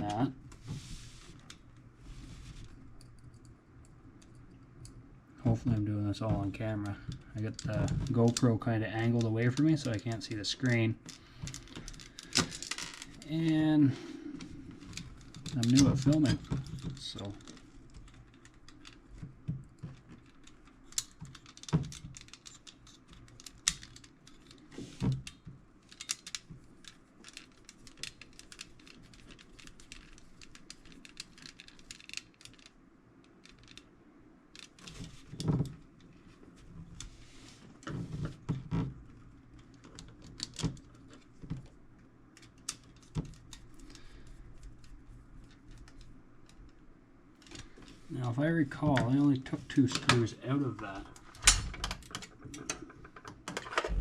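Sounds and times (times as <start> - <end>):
small metal clicks and rattles: 14.4 - 33.9.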